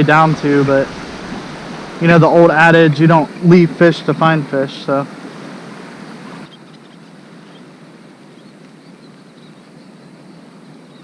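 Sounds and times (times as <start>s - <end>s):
wind hissing: 0.0s - 3.9s
surf: 0.0s - 7.5s.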